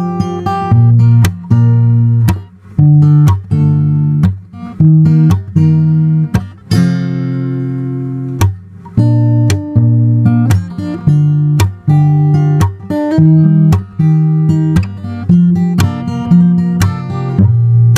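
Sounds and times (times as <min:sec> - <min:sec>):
acoustic guitar playing: 0:00.0 - 0:17.9.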